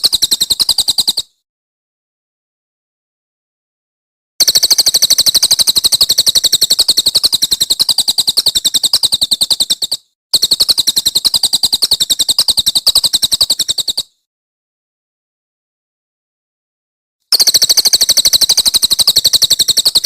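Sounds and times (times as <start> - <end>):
songbird high-pitched trill: 0.0 - 1.4, 4.4 - 14.2, 17.3 - 20.0.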